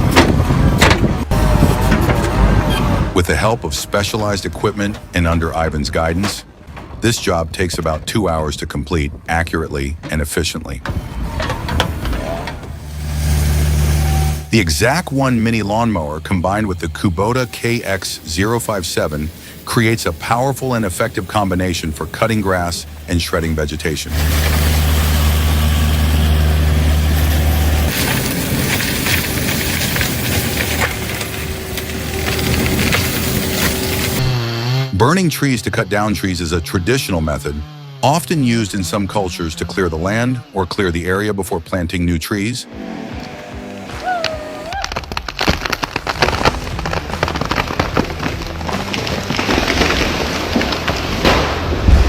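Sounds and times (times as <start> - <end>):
knocks and crackles: 0.0 - 2.7, 4.8 - 9.4, 22.2 - 34.4, 43.1 - 52.0
engine low hum: 10.8 - 17.1, 20.8 - 35.0, 42.6 - 44.8
rough noisy mowing sound: 11.0 - 35.0, 42.6 - 51.4.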